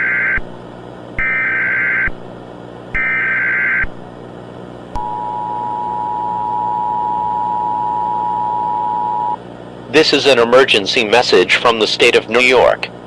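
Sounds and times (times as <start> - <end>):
steady two-tone attention signal: 5.0 - 9.4.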